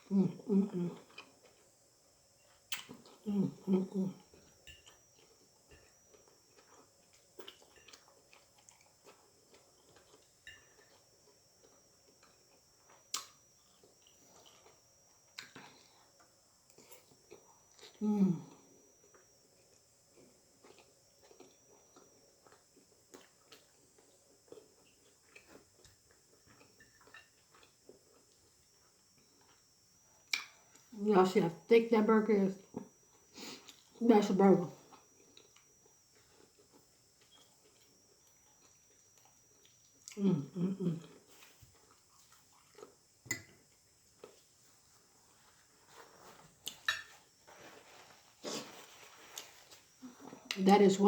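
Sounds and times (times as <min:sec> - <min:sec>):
mouth chewing food: 0:00.3 - 0:01.7, 0:02.5 - 0:29.6, 0:34.8 - 0:44.5.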